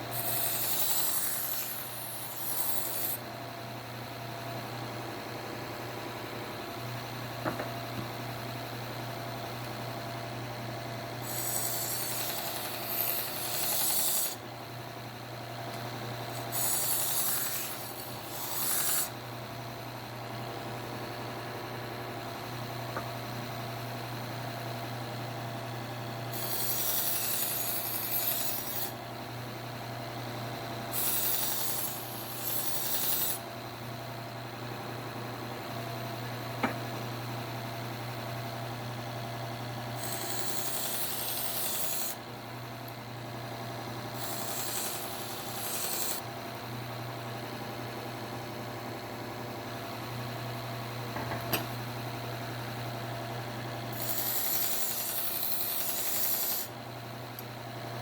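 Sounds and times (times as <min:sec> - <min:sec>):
knife rasping on sanding belt: 0:00.1 - 0:03.2, 0:16.4 - 0:19.1, 0:31.0 - 0:33.4, 0:53.9 - 0:56.7
knife blade hissing on sanding belt: 0:16.4 - 0:19.1, 0:54.0 - 0:56.7.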